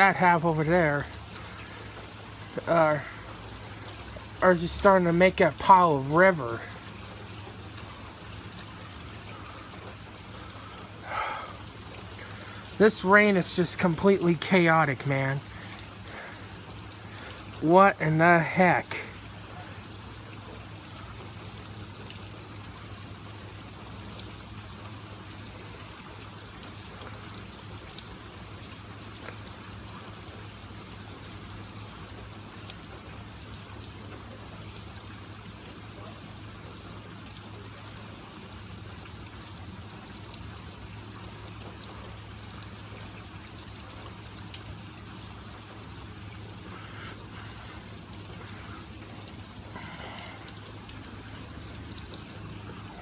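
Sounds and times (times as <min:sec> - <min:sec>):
heavy rain falling: 0:00.0 - 0:25.4, 0:44.2 - 0:53.0
runoff water pouring: 0:00.0 - 0:53.0.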